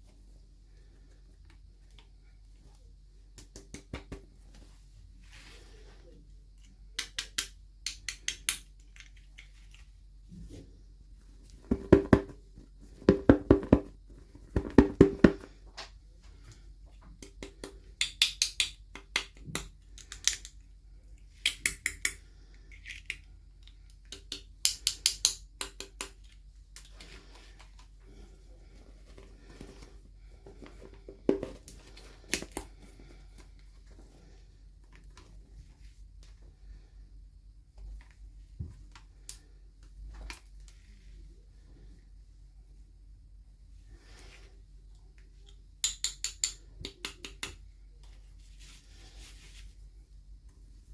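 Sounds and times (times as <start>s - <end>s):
plastic toy pieces clicking and rattling: 18.0s - 20.6s.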